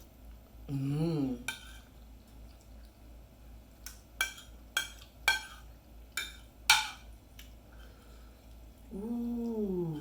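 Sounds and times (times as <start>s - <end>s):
cutlery clinking on a plate: 4.2s - 7.1s.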